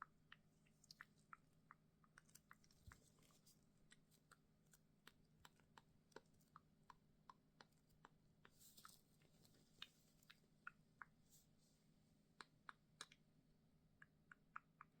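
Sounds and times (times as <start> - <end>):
soft rustle: 2.2 - 5.6, 7.8 - 10.6.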